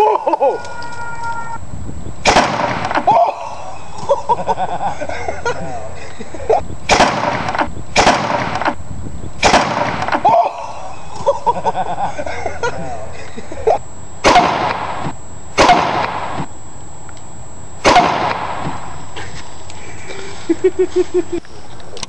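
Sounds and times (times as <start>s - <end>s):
spud gun bangs with hiss: 2.2s - 3.1s, 6.9s - 8.8s, 9.4s - 10.3s, 14.2s - 16.4s, 17.9s - 18.8s.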